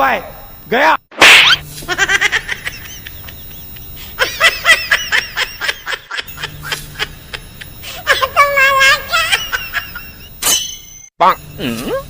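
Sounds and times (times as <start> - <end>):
high-pitched snickering laugh: 1.8 - 10.2.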